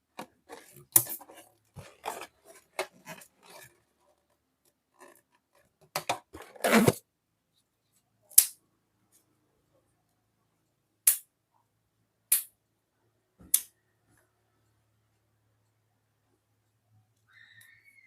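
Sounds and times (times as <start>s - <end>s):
balloons crackling and rubbing: 0.3s - 4.4s, 6.3s - 7.0s.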